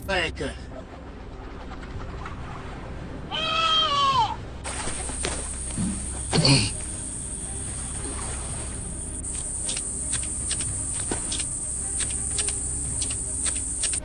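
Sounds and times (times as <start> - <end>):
steady hiss: 4.7 - 14.0.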